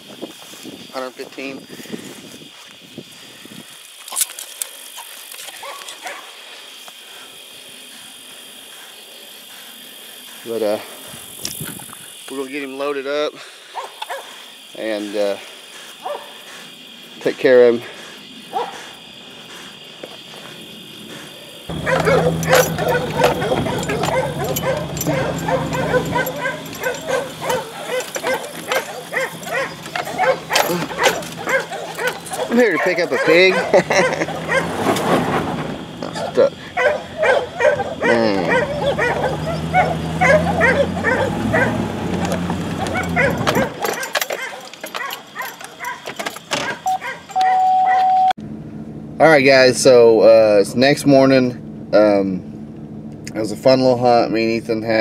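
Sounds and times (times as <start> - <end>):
dogs whining: 21.7 - 34.9, 36.0 - 48.3
low hum: 48.4 - 49.2.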